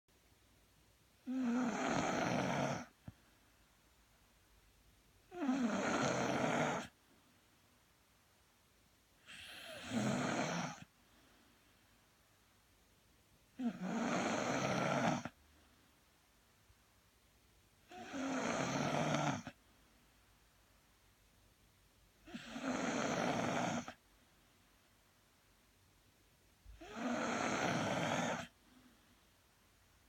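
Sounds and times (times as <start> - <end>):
person snoring: 1.2 - 3.0, 5.3 - 7.0, 9.2 - 10.9, 13.6 - 15.4, 17.9 - 19.6, 22.3 - 24.0, 26.8 - 28.6
quiet breathing: 1.2 - 3.9, 9.2 - 12.5, 13.5 - 16.2, 26.7 - 29.5.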